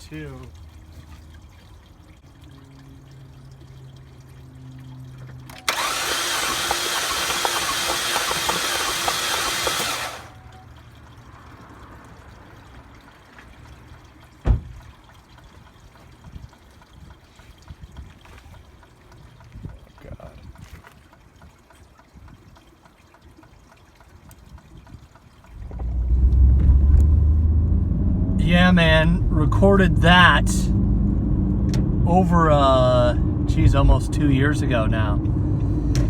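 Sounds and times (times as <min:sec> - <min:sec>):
engine cranked by starter: 0:05.4 - 0:10.5.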